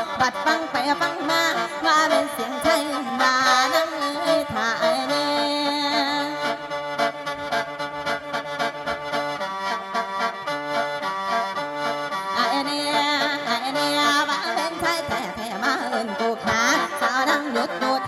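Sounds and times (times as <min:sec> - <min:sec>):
woman singing: 0:00.0 - 0:06.6, 0:12.3 - 0:18.0.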